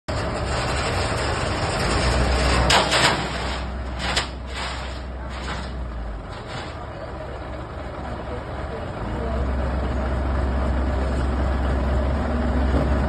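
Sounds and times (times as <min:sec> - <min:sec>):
excavator engine hum: 0:00.1 - 0:13.0
sharp metallic clanks: 0:01.8 - 0:06.8.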